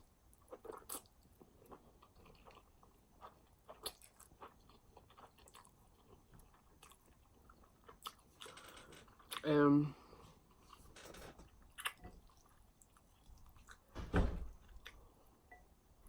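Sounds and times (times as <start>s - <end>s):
person chewing food: 0.1s - 9.5s, 10.4s - 13.9s, 14.5s - 15.4s.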